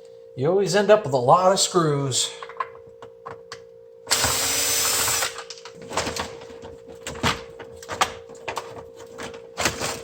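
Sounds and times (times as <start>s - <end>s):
power drill whirring: 4.1s - 5.4s.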